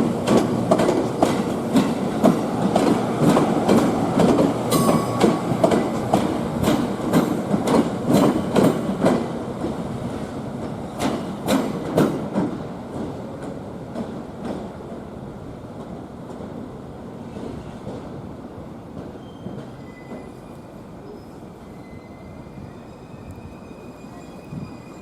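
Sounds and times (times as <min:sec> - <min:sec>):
train rolling rumble: 0:00.0 - 0:25.0
high wheel squeal: 0:19.2 - 0:25.0.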